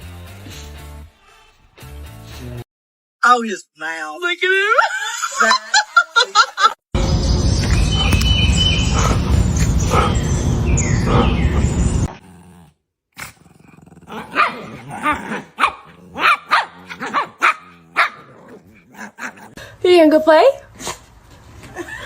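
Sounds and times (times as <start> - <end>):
loud steady rumbling: 7.0 - 12.1
dog barking and growling: 7.8 - 19.8.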